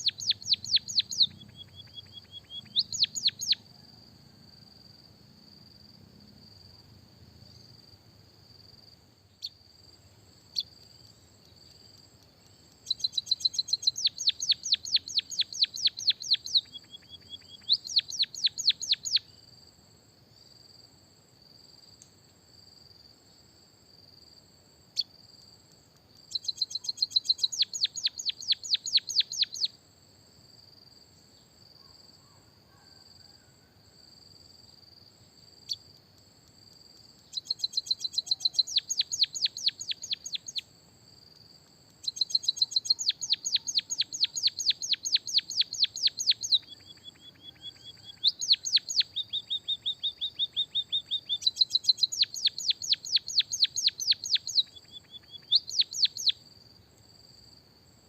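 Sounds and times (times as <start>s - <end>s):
finch chirping: 0.0s - 3.6s, 12.8s - 19.2s, 26.3s - 29.7s, 37.3s - 40.6s, 42.0s - 56.4s.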